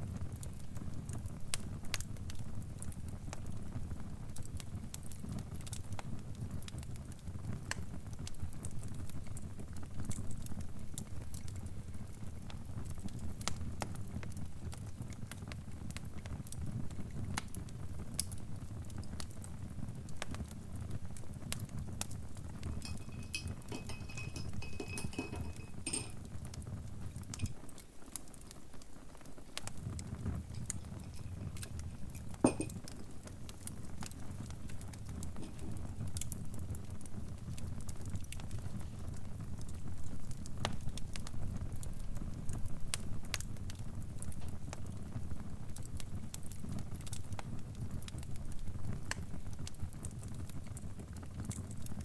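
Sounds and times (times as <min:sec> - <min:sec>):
low fire rumble: 0:00.0 - 0:52.0
wood fire crackling and popping: 0:00.0 - 0:52.0.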